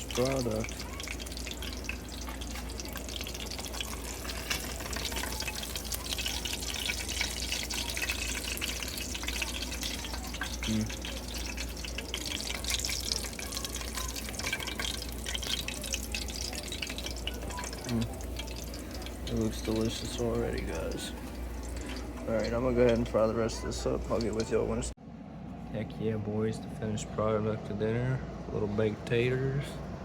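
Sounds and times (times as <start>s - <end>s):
fish frying in a pan: 0.0s - 24.9s.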